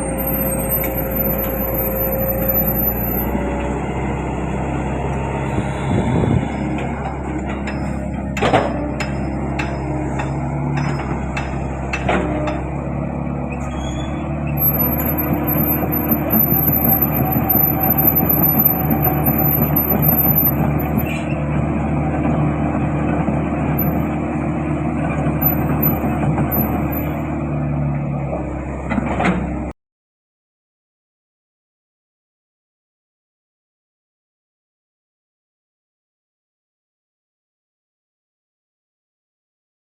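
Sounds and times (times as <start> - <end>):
excavator diesel engine running: 0.0 - 29.7.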